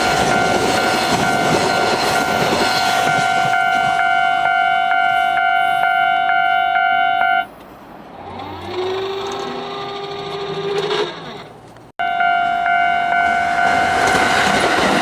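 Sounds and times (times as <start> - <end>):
level crossing alarm ringing: 0.0 - 7.5, 12.0 - 14.9.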